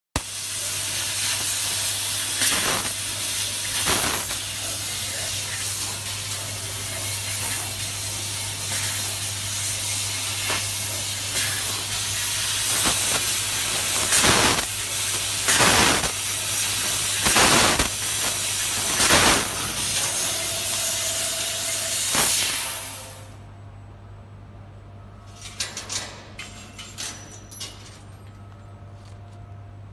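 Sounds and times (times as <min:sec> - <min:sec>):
assist gas hissing: 0:00.2 - 0:23.4
machine low hum: 0:23.1 - 0:29.9.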